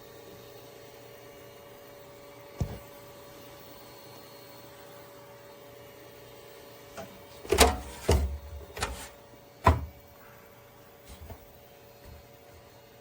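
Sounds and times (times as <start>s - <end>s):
sharp knocks and clunks: 7.5s - 10.0s.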